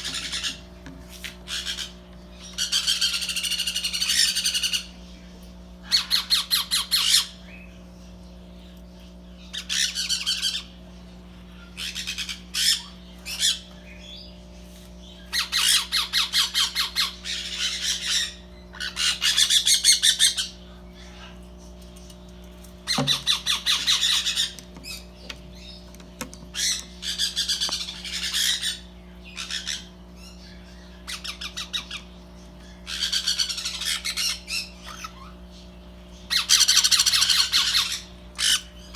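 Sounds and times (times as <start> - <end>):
parrots squawking: 0.0 - 0.7, 1.4 - 5.0, 5.8 - 7.4, 9.4 - 10.8, 11.8 - 13.7, 15.3 - 21.4, 22.8 - 35.6, 36.2 - 38.9.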